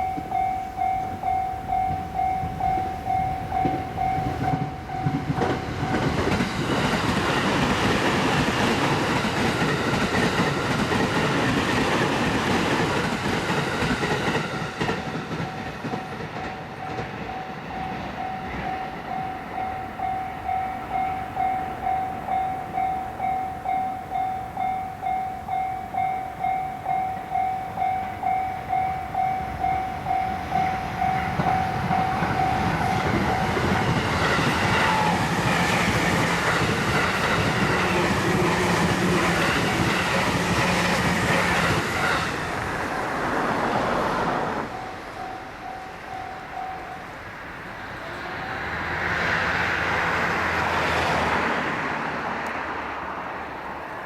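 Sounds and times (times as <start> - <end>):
level crossing alarm ringing: 0.0 - 6.6, 14.6 - 40.4
train wheels clacking on rails: 0.0 - 47.1.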